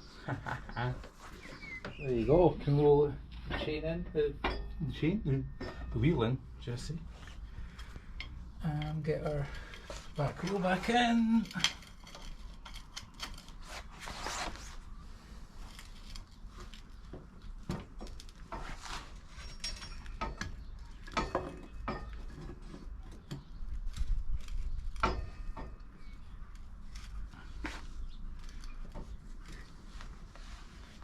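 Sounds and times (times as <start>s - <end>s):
metallic clinks and knocks: 4.3s - 6.3s, 19.3s - 23.4s, 24.4s - 26.2s.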